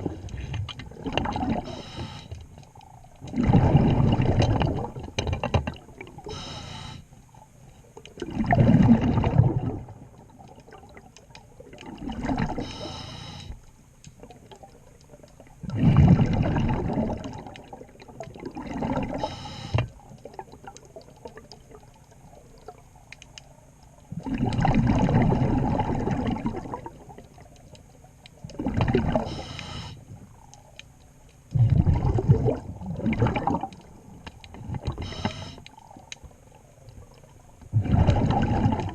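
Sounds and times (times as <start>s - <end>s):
bubbles gurgling: 0.0s - 1.9s, 2.8s - 6.4s, 8.1s - 12.8s, 14.2s - 19.3s, 20.2s - 22.8s, 24.1s - 27.7s, 28.4s - 30.4s, 31.5s - 38.9s
diver breathing through regulator: 1.6s - 2.4s, 6.3s - 7.1s, 12.5s - 13.6s, 19.1s - 19.9s, 29.2s - 30.1s, 34.9s - 35.7s.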